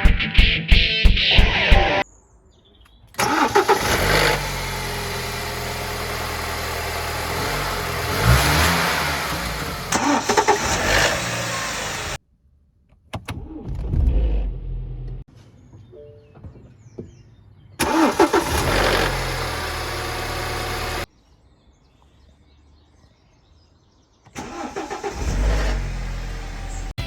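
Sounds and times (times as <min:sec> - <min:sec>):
petrol engine starting and running: 0:03.1 - 0:12.2, 0:17.8 - 0:21.1, 0:24.3 - 0:27.0.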